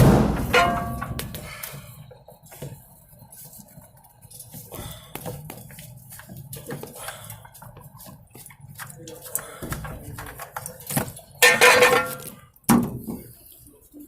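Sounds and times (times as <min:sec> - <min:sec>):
metal knock: 0:00.0 - 0:01.3
ringing metallic clang: 0:00.0 - 0:01.3
tools clinking and rattling: 0:00.4 - 0:01.4, 0:09.0 - 0:12.4.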